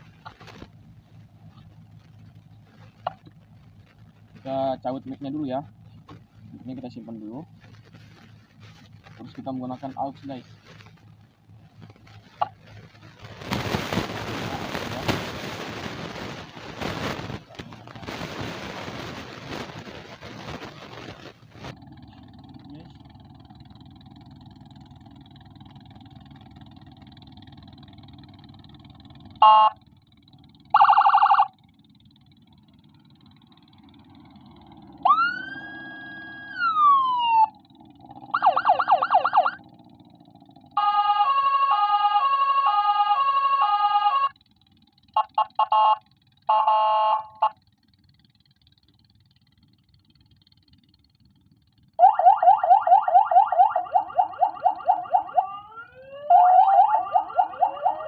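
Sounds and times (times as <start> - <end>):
low hum: 0.0 - 58.0
siren chirps: 29.0 - 29.9, 30.6 - 31.6, 34.0 - 44.4, 45.1 - 47.6, 52.0 - 58.0
electronic siren tones: 29.1 - 29.8, 30.7 - 31.6, 34.3 - 44.4, 45.2 - 47.6, 52.0 - 58.0.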